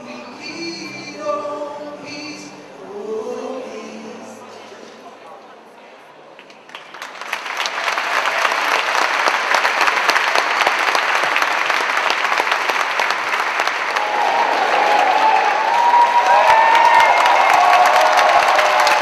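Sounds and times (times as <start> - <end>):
audience applauding: 6.6 - 19.0.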